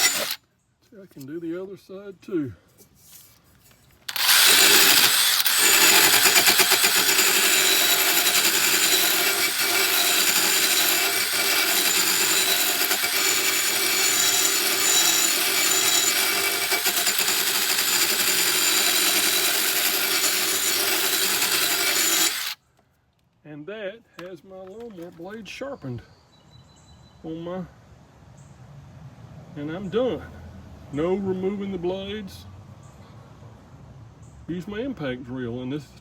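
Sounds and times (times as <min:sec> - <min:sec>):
grinding stone sharpening metal blade: 0:00.0 - 0:00.4, 0:04.1 - 0:22.5.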